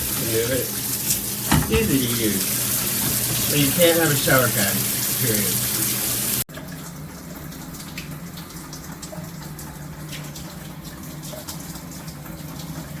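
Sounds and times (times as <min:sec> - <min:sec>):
shower head spraying water: 0:00.0 - 0:06.4.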